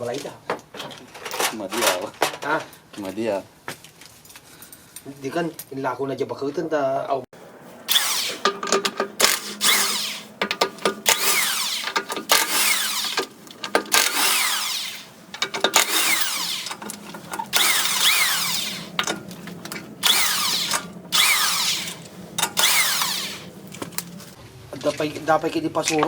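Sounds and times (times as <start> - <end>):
power tool motor bursts: 7.9 - 24.4.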